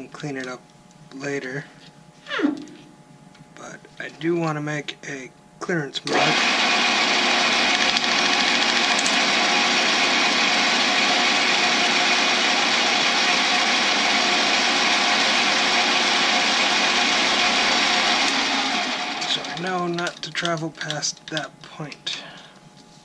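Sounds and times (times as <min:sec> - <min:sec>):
lathe motor humming: 0:06.1 - 0:20.2.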